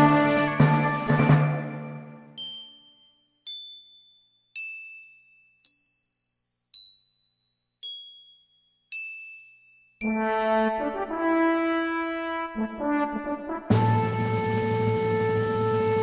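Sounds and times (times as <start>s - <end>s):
brass music: 0.0s - 2.2s, 10.1s - 16.0s
background music: 0.0s - 2.5s, 10.1s - 16.0s
high bell-like dings: 1.9s - 10.3s.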